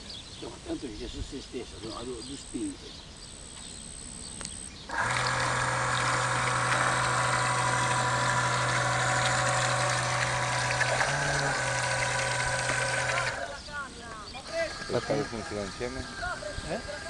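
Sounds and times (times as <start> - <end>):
electric jet thrusters whirring: 4.9 - 13.6, 14.4 - 17.0.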